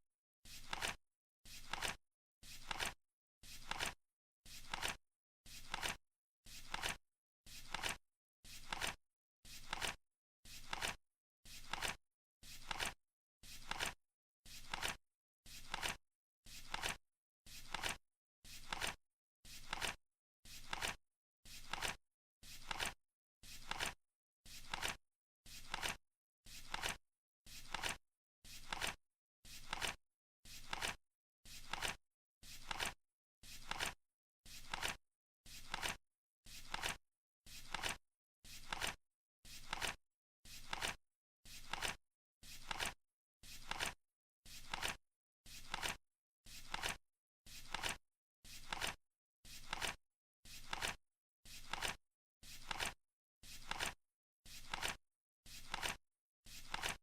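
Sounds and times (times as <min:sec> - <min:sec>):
flip clock card flapping: 0:00.6 - 0:01.0, 0:01.6 - 0:02.0, 0:02.6 - 0:03.0, 0:03.6 - 0:04.0, 0:04.6 - 0:05.0, 0:05.6 - 0:06.0, 0:06.7 - 0:07.0, 0:07.7 - 0:08.0, 0:08.6 - 0:09.0, 0:09.6 - 0:10.0, 0:10.6 - 0:11.0, 0:11.6 - 0:12.0, 0:12.6 - 0:13.0, 0:13.6 - 0:14.0, 0:14.6 - 0:15.0, 0:15.6 - 0:16.0, 0:16.7 - 0:17.0, 0:17.7 - 0:18.0, 0:18.6 - 0:19.0, 0:19.6 - 0:20.0, 0:20.6 - 0:21.0, 0:21.6 - 0:22.0, 0:22.6 - 0:23.0, 0:23.6 - 0:24.0, 0:24.6 - 0:25.0, 0:25.6 - 0:26.0, 0:26.7 - 0:27.0, 0:27.7 - 0:28.0, 0:28.6 - 0:29.0, 0:29.6 - 0:30.0, 0:30.6 - 0:31.0, 0:31.6 - 0:32.0, 0:32.6 - 0:33.0, 0:33.6 - 0:34.0, 0:34.6 - 0:35.0, 0:35.6 - 0:36.0, 0:36.7 - 0:37.0, 0:37.7 - 0:38.0, 0:38.6 - 0:39.0, 0:39.6 - 0:40.0, 0:40.6 - 0:41.0, 0:41.6 - 0:42.0, 0:42.6 - 0:43.0, 0:43.6 - 0:44.0, 0:44.6 - 0:45.0, 0:45.6 - 0:46.0, 0:46.7 - 0:47.0, 0:47.7 - 0:48.0, 0:48.6 - 0:49.0, 0:49.6 - 0:50.0, 0:50.6 - 0:51.0, 0:51.6 - 0:52.0, 0:52.6 - 0:53.0, 0:53.6 - 0:54.0, 0:54.6 - 0:55.0, 0:55.6 - 0:56.0, 0:56.7 - 0:57.0.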